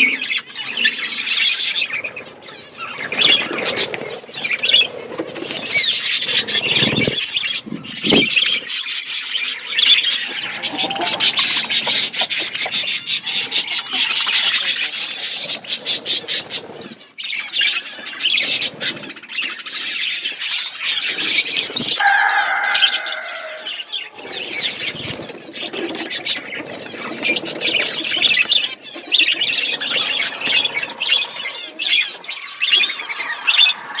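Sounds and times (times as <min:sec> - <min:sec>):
budgerigars chattering: 0:00.0 - 0:22.0, 0:22.7 - 0:34.0
lower held bird call: 0:21.3 - 0:24.7.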